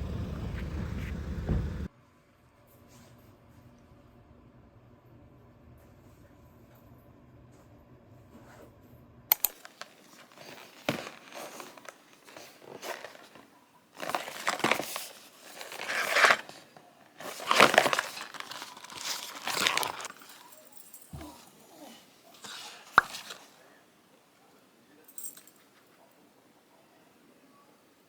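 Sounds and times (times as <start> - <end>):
packaging crinkling and rustling: 9.3 - 23.8.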